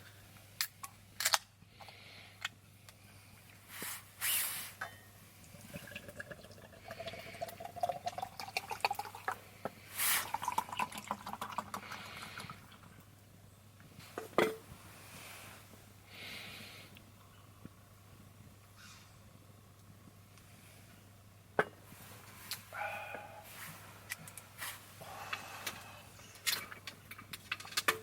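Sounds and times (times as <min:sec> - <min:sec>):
liquid pouring into container: 0:05.4 - 0:13.0
small drips and clicks: 0:05.4 - 0:13.2.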